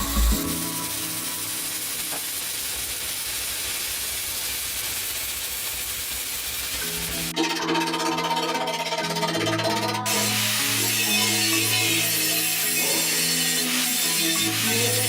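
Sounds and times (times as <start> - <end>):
music: 0.0 - 2.2, 6.8 - 15.0
welding hiss and crackle: 0.0 - 7.4, 10.1 - 15.0.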